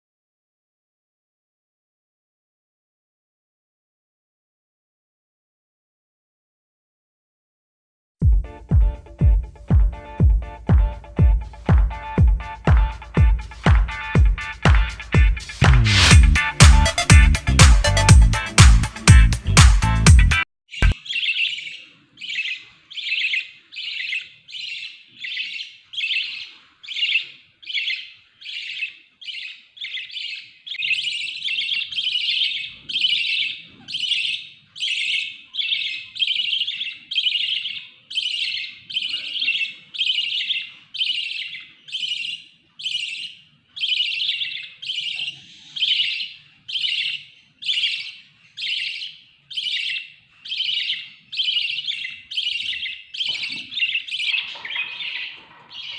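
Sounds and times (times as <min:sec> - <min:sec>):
budgerigar chirping: 0:20.7 - 0:55.9.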